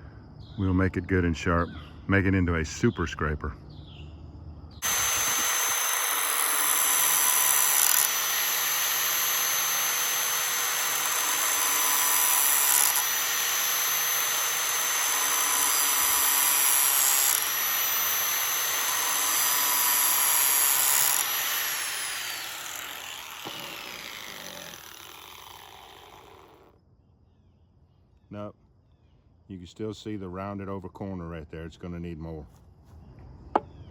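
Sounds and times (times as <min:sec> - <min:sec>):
angle grinder grinding metal: 0:04.8 - 0:26.7.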